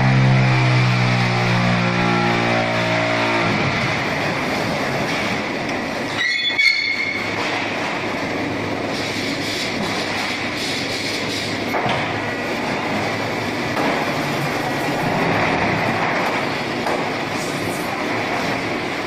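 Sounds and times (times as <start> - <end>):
steady hum: 0.0 - 6.2, 6.9 - 19.0
high-pitched metal squeal: 6.1 - 7.3.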